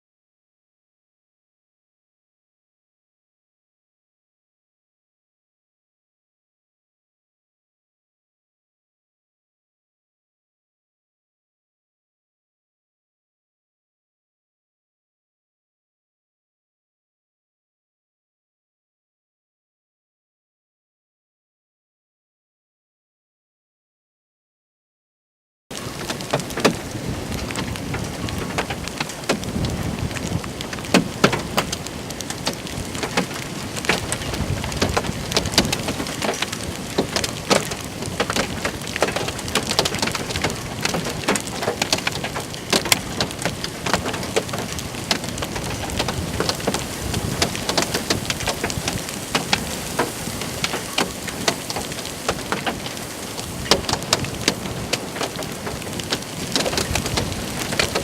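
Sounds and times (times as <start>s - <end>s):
heavy rain pouring down: 25.7s - 58.0s
raindrops hitting a hard surface: 25.7s - 58.0s.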